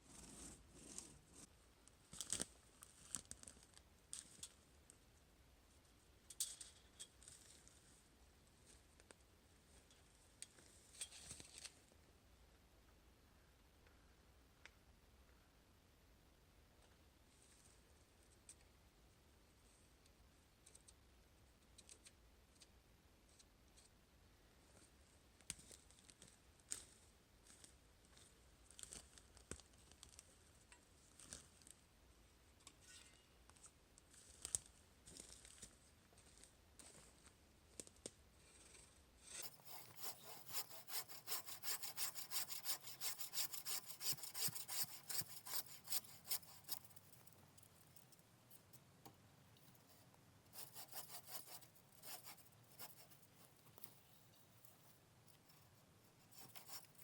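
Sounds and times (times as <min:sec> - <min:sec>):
handsaw cutting log: 0:39.4 - 0:46.9, 0:50.6 - 0:53.0, 0:56.3 - 0:57.0.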